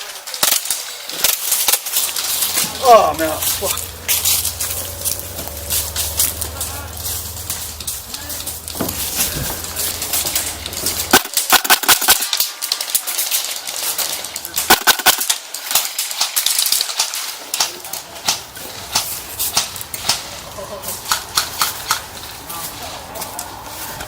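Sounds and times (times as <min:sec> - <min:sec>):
airsoft guns firing: 0:00.0 - 0:13.5, 0:14.6 - 0:20.3.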